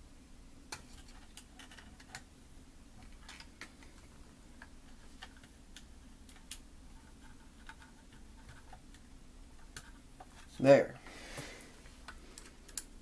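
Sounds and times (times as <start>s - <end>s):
light clicks of small parts: 12.0s - 12.9s.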